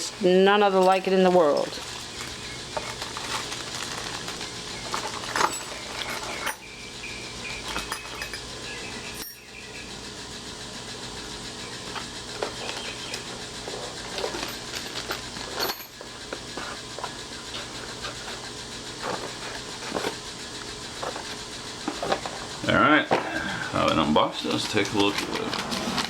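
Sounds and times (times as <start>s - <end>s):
packaging rustling: 1.3s - 6.4s
metal lock parts clinking: 4.8s - 6.7s, 7.6s - 8.5s.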